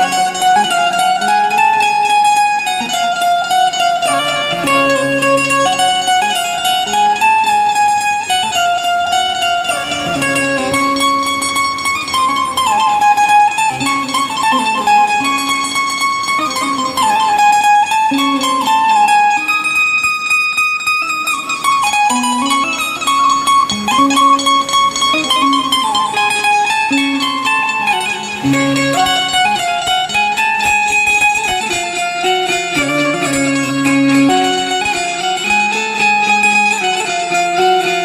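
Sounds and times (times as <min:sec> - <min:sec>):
plucked string ringtone melody: 0:00.0 - 0:38.0.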